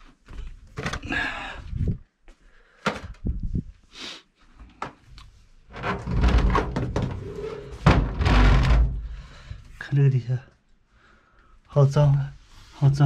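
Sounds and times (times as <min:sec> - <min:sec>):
objects knocking and clunking: 0:05.8 - 0:09.0
scraping rumble: 0:06.0 - 0:09.0.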